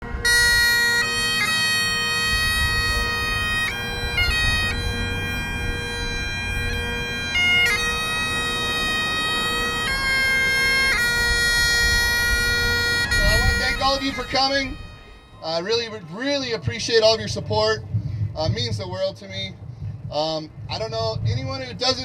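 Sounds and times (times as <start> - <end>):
bagpipes playing slow melody: 0.0 - 16.1.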